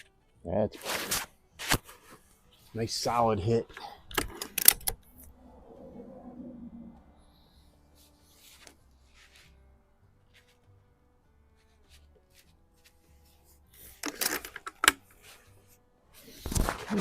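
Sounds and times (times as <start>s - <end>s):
air rifle clicks and rubbing: 3.7s - 5.3s, 13.8s - 15.4s
scraping noise: 5.0s - 8.6s.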